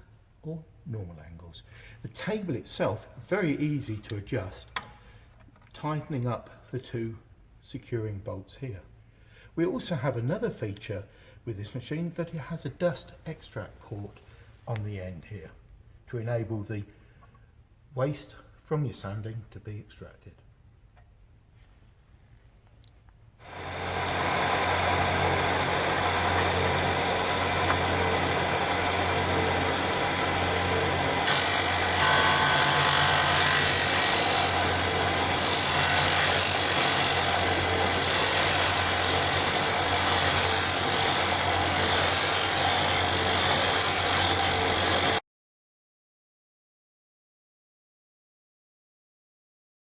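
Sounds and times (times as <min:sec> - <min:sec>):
belt sander motor humming: 0:23.4 - 0:45.2
sanding belt hissing: 0:23.5 - 0:45.2.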